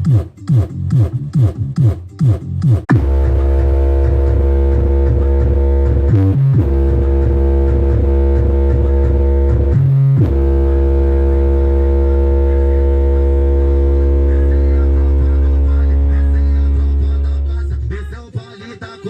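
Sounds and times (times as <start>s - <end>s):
loud electronic music with bass: 0.0s - 19.0s.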